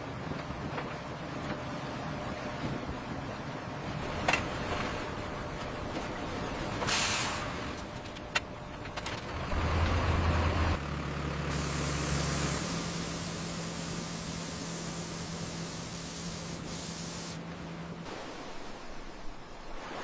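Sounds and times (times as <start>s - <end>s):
loud hiss: 11.5s - 17.4s.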